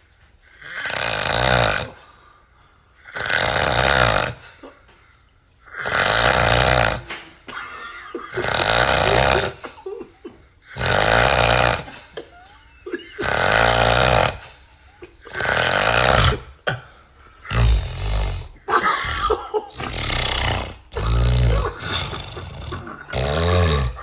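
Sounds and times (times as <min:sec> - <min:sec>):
loud snoring: 0:00.4 - 0:02.2, 0:03.0 - 0:04.6, 0:05.6 - 0:07.3, 0:08.3 - 0:09.7, 0:10.6 - 0:12.1, 0:13.1 - 0:16.6, 0:17.4 - 0:24.0.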